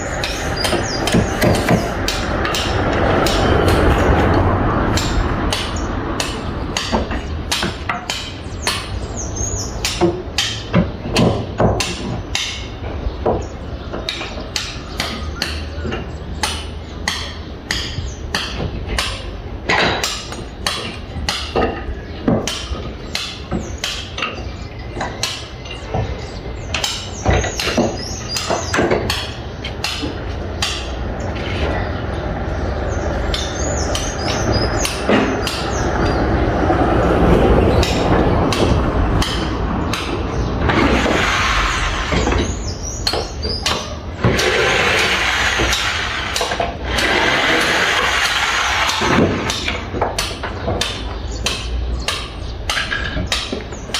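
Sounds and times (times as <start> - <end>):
construction site noise: 0.0 - 53.9
hammer driving nails: 43.1 - 53.7.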